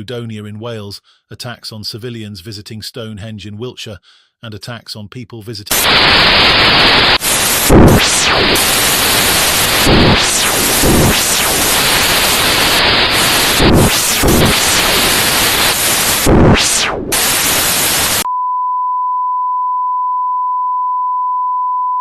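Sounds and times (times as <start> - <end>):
television static hiss: 5.7 - 18.3
falling sweep: 7.1 - 18.3.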